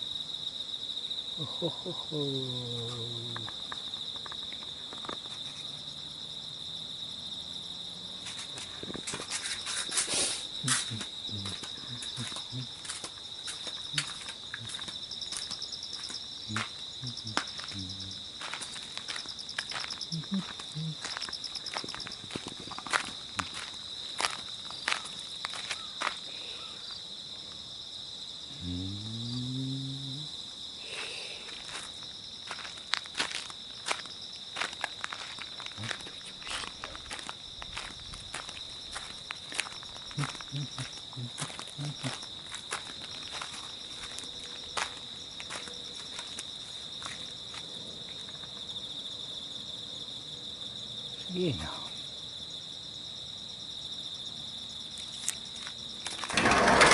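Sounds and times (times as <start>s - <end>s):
insects chirring: 0.0s - 56.9s
low voice-like hum: 1.4s - 3.5s, 16.5s - 18.2s, 28.5s - 30.3s
insects shrilling: 8.0s - 27.1s.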